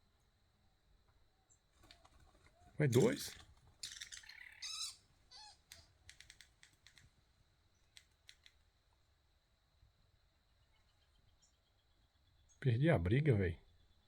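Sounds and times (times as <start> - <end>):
wild birds calling: 2.6 - 7.0.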